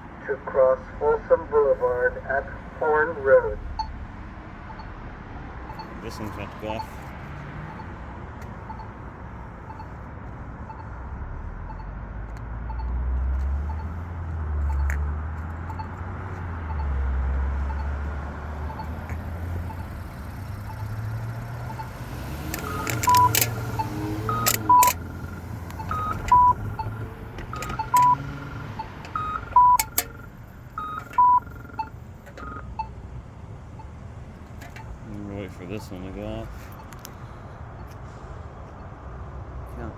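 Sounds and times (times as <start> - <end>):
pedestrian signal ticking: 0.0 - 39.9
traffic passing: 0.0 - 39.9
sharp chirps with electronic beeps: 27.6 - 32.9.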